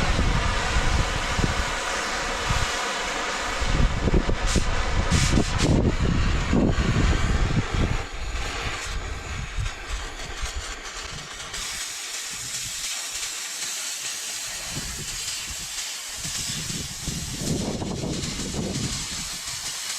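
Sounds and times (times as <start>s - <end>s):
low rumble: 0.0s - 2.7s, 3.3s - 11.8s
cutting torch hissing: 0.0s - 19.9s.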